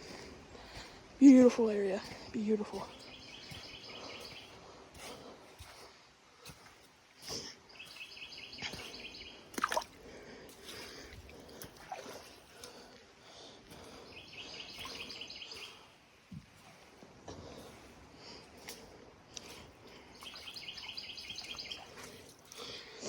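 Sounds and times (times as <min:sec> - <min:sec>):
footsteps splashing in creek: 0:00.0 - 0:23.0
songbird trilling: 0:02.8 - 0:04.5, 0:07.7 - 0:09.8, 0:14.1 - 0:15.8, 0:20.1 - 0:22.0.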